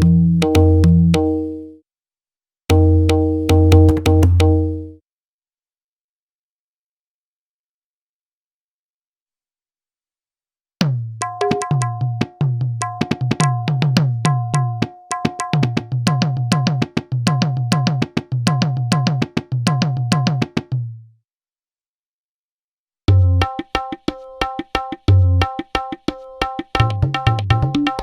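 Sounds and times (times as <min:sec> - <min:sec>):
hand drum pattern: 0:00.0 - 0:01.3, 0:02.7 - 0:04.8, 0:10.8 - 0:20.8, 0:23.1 - 0:28.0.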